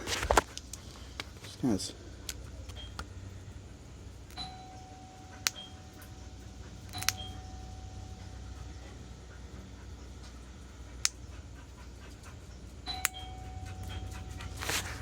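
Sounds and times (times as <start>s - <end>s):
faint doorbell chime: 4.4s - 9.0s, 12.8s - 15.0s.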